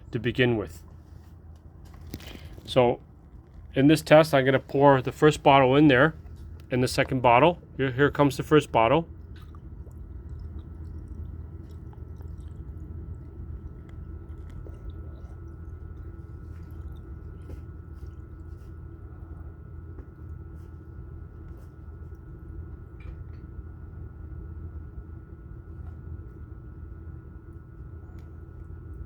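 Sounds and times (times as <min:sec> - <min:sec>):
low hum: 0:00.0 - 0:29.0
wet glugging: 0:00.8 - 0:21.0
water pouring and splashing: 0:09.2 - 0:18.7.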